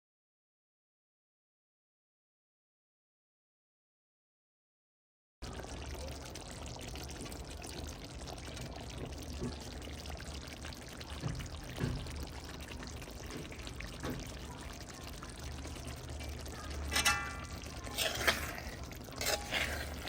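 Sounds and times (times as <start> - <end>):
pot of curry bubbling: 5.4 - 20.0.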